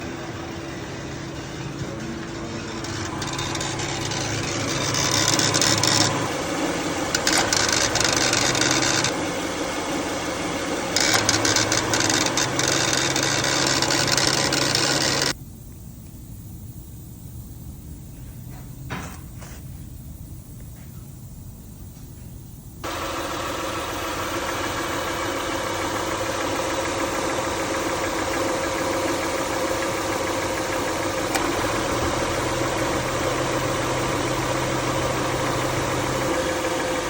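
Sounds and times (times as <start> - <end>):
mechanical whirring and rattling: 0.0 - 15.4, 22.8 - 37.0
steady low hum: 0.0 - 37.0.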